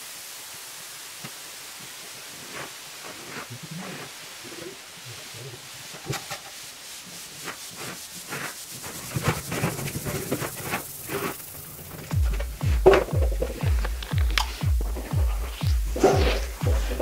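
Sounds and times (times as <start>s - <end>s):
faint hiss: 0.0s - 17.0s
scraping and knocking: 8.9s - 17.0s.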